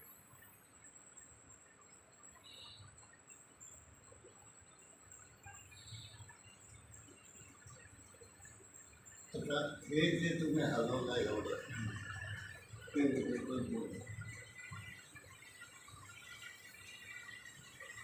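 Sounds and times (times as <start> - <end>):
faint high chirps: 0.0 - 18.0.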